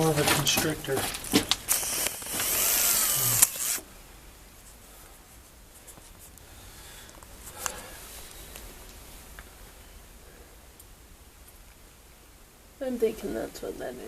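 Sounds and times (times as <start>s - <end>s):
snake hissing: 1.7s - 3.8s.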